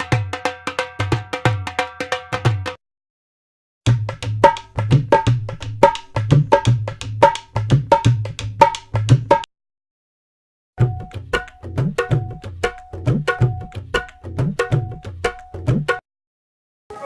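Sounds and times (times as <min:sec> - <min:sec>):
percussion music: 0:00.0 - 0:02.8, 0:03.9 - 0:09.5, 0:10.8 - 0:16.0.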